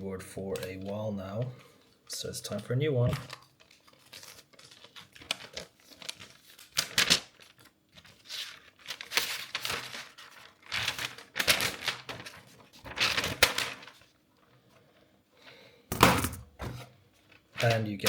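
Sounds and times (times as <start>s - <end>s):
packaging rustling: 0.6s - 14.9s.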